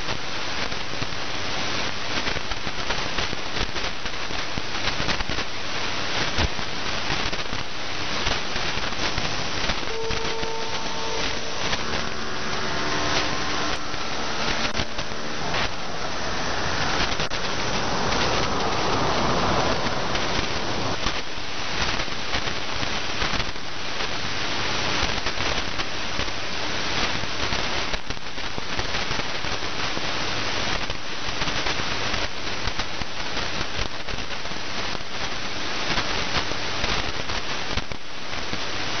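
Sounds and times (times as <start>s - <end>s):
radio static hissing and crackling: 0.0s - 39.0s
static clicks: 0.0s - 39.0s
steady radio tones: 0.1s - 27.9s.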